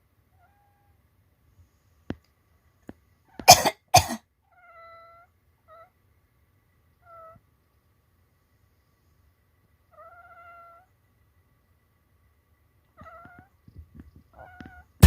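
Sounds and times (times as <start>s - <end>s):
person fake coughing: 3.5s - 4.2s
cat meowing: 9.9s - 10.9s, 13.0s - 13.6s, 14.3s - 15.0s.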